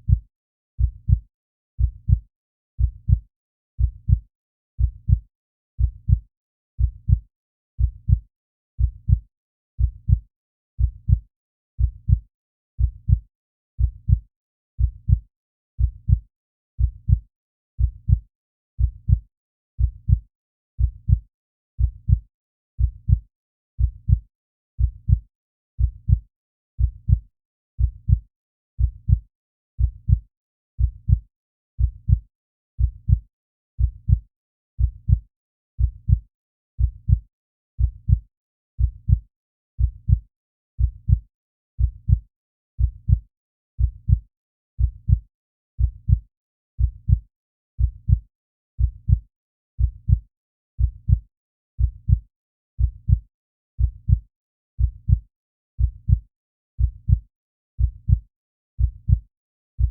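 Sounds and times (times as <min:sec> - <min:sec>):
heartbeat thuds: 0:01.8 - 0:02.2, 0:02.8 - 0:03.2, 0:03.8 - 0:04.2, 0:04.8 - 0:05.2, 0:05.8 - 0:06.2, 0:06.8 - 0:07.2, 0:07.8 - 0:08.2, 0:12.8 - 0:13.2, 0:19.8 - 0:20.2, 0:20.8 - 0:21.2, 0:21.8 - 0:22.2, 0:22.8 - 0:23.2, 0:23.8 - 0:24.2, 0:25.8 - 0:26.2, 0:26.8 - 0:27.2, 0:27.8 - 0:28.2, 0:28.8 - 0:29.2, 0:29.8 - 0:30.2, 0:30.8 - 0:31.2, 0:31.8 - 0:32.2, 0:32.8 - 0:33.2, 0:33.8 - 0:34.2, 0:34.8 - 0:35.2, 0:35.8 - 0:36.2, 0:36.8 - 0:37.2, 0:37.8 - 0:38.2, 0:38.8 - 0:39.2, 0:39.8 - 0:40.2, 0:40.8 - 0:41.2, 0:41.8 - 0:42.2, 0:42.8 - 0:43.2, 0:43.8 - 0:44.2, 0:44.8 - 0:45.2, 0:45.8 - 0:46.2, 0:46.8 - 0:47.2, 0:47.8 - 0:48.2, 0:48.8 - 0:49.2, 0:49.8 - 0:50.2, 0:50.8 - 0:51.2, 0:51.8 - 0:52.2, 0:52.8 - 0:53.2, 0:53.8 - 0:54.2, 0:54.8 - 0:55.2, 0:55.8 - 0:56.2, 0:56.8 - 0:57.2, 0:57.8 - 0:58.2, 0:58.8 - 0:59.2.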